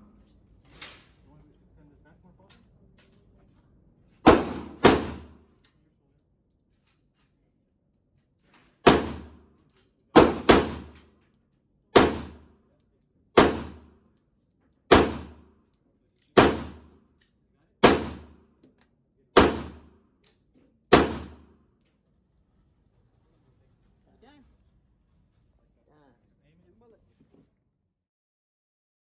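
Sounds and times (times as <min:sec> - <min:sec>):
pistol shots: 0:04.2 - 0:05.5, 0:08.8 - 0:09.4, 0:10.2 - 0:11.0, 0:12.0 - 0:12.5, 0:13.4 - 0:14.0, 0:14.9 - 0:15.5, 0:16.4 - 0:17.0, 0:17.8 - 0:18.4, 0:19.4 - 0:20.0, 0:20.9 - 0:21.5.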